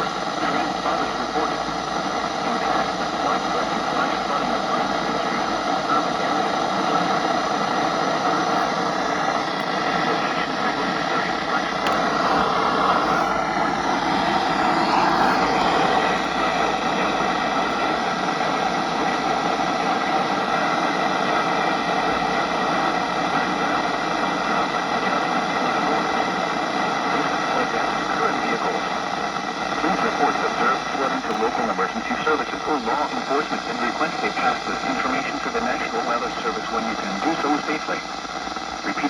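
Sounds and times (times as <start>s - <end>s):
radio static hiss: 0.0s - 39.0s.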